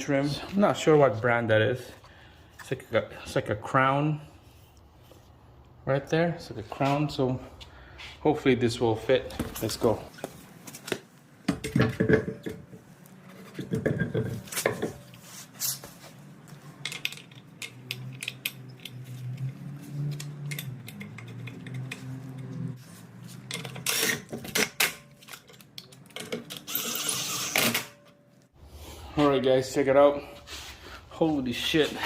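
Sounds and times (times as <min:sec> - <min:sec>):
metal clanks and knocks: 0:11.5 - 0:15.1.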